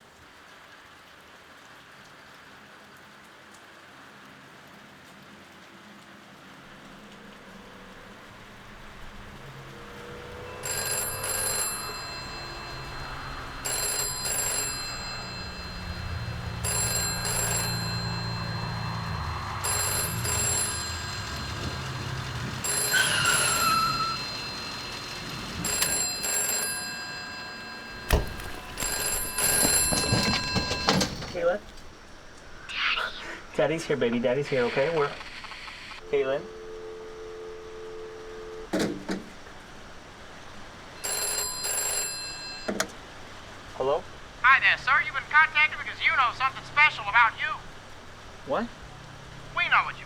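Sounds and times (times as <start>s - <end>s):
telephone ringing: 6.7s - 32.0s, 34.1s - 48.2s.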